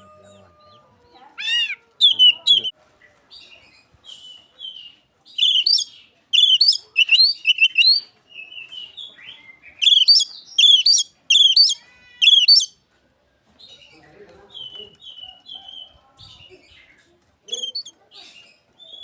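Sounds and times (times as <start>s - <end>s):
magpie-robin singing: 1.4s - 2.7s, 3.4s - 12.8s, 14.5s - 18.0s.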